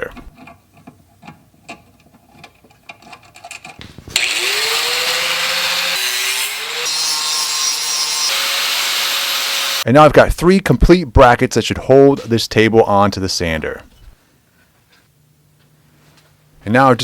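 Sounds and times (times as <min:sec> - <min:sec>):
electric grinder motor whine: 0:04.2 - 0:09.8
grinding steel rasping hiss: 0:04.2 - 0:09.8.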